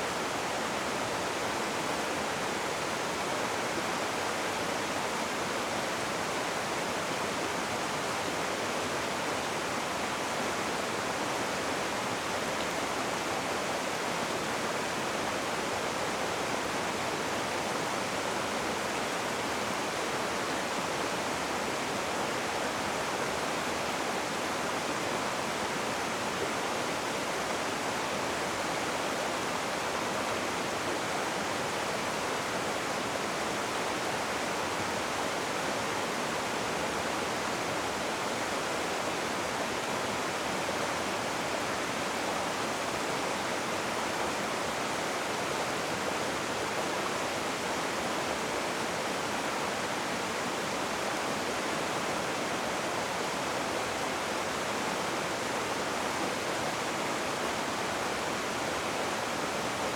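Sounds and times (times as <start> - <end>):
rushing river water: 0.0 - 59.9.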